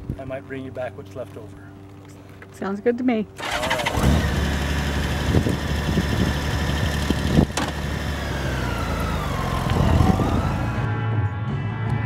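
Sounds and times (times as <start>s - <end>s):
atv engine droning: 3.4s - 11.0s.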